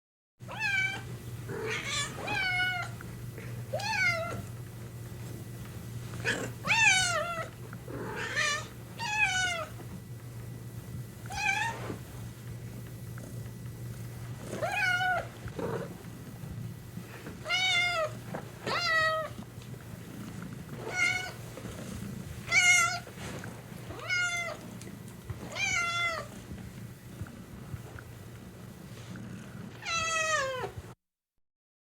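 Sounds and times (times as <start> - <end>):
cat purring: 0.9 - 31.0
cat meowing: 23.9 - 24.6, 29.8 - 30.8.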